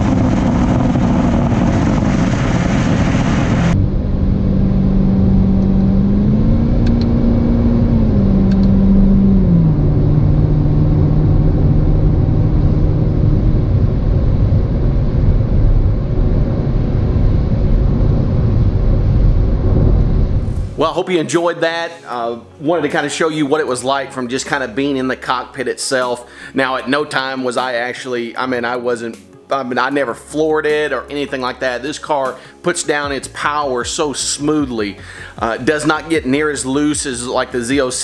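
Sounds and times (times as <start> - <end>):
loud rushing noise: 0.0 - 6.7, 9.3 - 21.0
car engine drone: 0.0 - 20.8.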